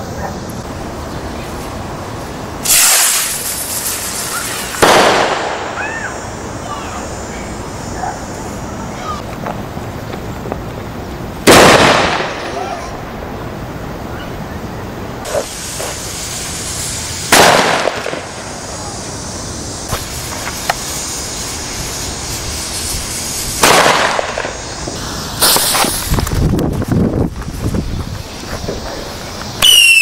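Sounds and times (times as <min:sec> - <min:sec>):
firework bangs with rumble: 0:02.6 - 0:05.8, 0:11.4 - 0:12.4, 0:17.3 - 0:18.4, 0:23.5 - 0:24.6, 0:25.4 - 0:26.5
small firework pops: 0:02.6 - 0:05.9, 0:11.5 - 0:12.6, 0:15.2 - 0:16.1, 0:17.3 - 0:18.4, 0:19.9 - 0:21.0, 0:23.5 - 0:24.7, 0:25.4 - 0:30.0
crackling firework bangs: 0:02.6 - 0:06.2, 0:11.4 - 0:12.9, 0:15.2 - 0:19.1, 0:19.8 - 0:30.0.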